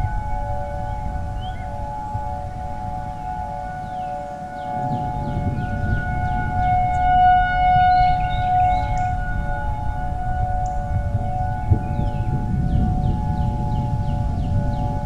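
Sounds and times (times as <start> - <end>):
tornado warning siren: 0.0 - 15.0.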